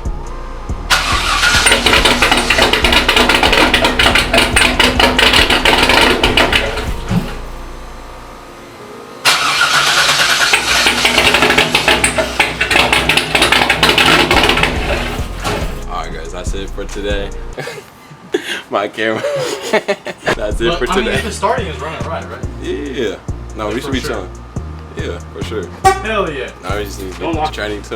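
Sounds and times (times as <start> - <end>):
car engine with choppy idle: 0.8 - 7.8, 9.3 - 17.4.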